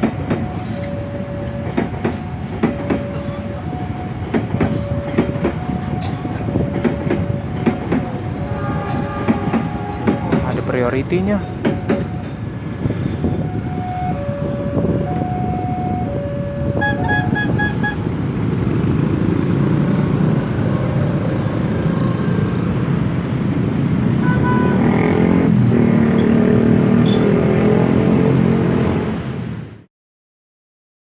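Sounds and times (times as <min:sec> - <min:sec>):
traffic engine and road noise: 0:00.0 - 0:29.9
level-crossing alarm two tones: 0:11.4 - 0:18.2.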